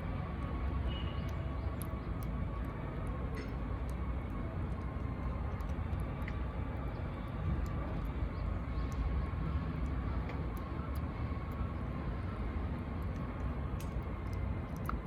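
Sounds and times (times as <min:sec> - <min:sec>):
low outdoor rumble: 0:00.0 - 0:15.0
faint small clicks: 0:00.2 - 0:09.2, 0:13.0 - 0:15.0.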